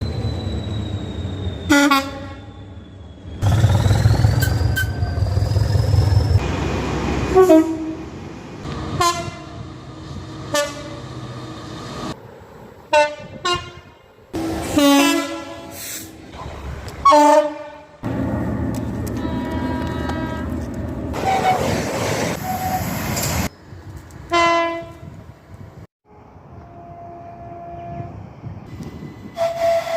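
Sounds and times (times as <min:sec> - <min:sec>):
train horn blasts: 0:01.7 - 0:02.6, 0:07.3 - 0:08.1, 0:08.9 - 0:09.7, 0:10.5 - 0:11.0, 0:12.9 - 0:16.0, 0:17.0 - 0:18.0, 0:19.0 - 0:21.6, 0:24.3 - 0:25.1, 0:26.1 - 0:28.2, 0:29.4 - 0:29.9
train running rumble: 0:03.4 - 0:13.5, 0:14.3 - 0:25.8.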